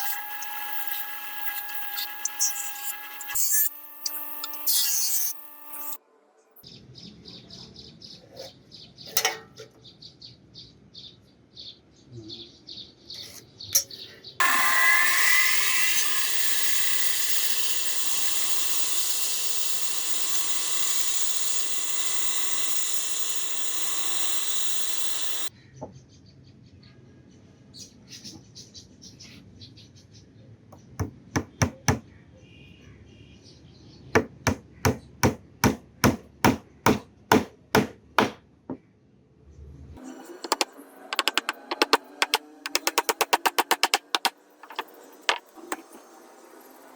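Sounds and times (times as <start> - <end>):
power tool running: 0.0 - 6.0, 14.4 - 25.5, 40.0 - 45.9
working strokes: 0.0 - 6.0, 14.4 - 25.5, 40.3 - 46.0
sharp knocks: 40.4 - 45.4.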